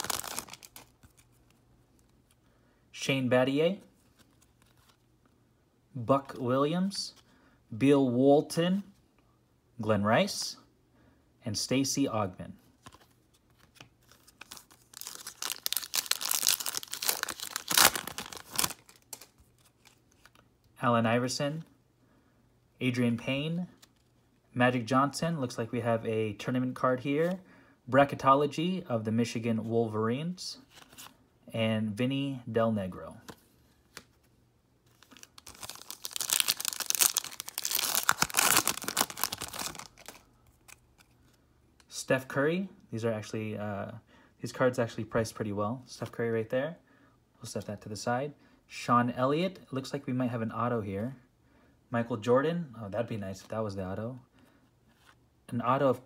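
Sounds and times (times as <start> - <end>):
foil wrapper tearing and crinkling: 0.0 - 1.2, 14.4 - 19.3, 35.0 - 40.8.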